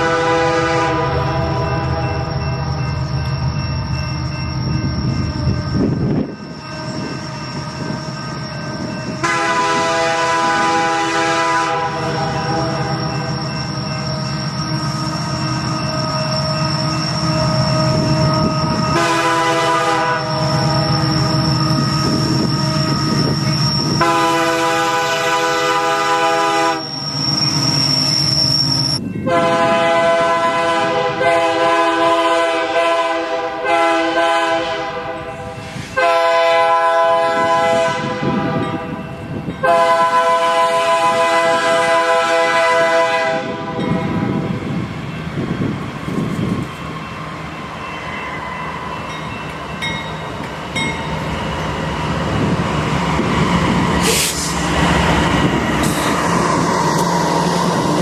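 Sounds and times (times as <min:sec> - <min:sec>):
locomotive air horn chord: 0:00.0 - 0:02.4, 0:09.2 - 0:13.2, 0:17.2 - 0:26.9, 0:29.2 - 0:39.0, 0:39.6 - 0:44.0
train wheels rumbling on rails: 0:00.0 - 0:58.0.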